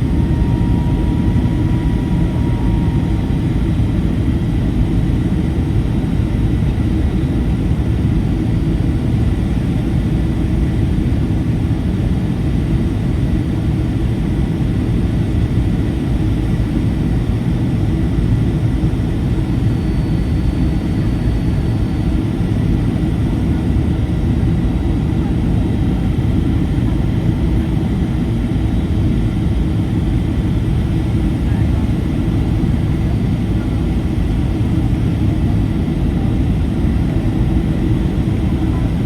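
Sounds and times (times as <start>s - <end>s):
aircraft cabin rumble: 0.0s - 39.0s.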